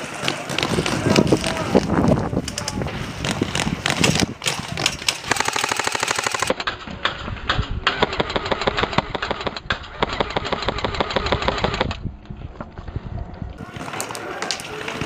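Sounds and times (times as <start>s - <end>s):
airsoft rifle firing full auto: 5.2s - 6.6s, 7.9s - 11.9s.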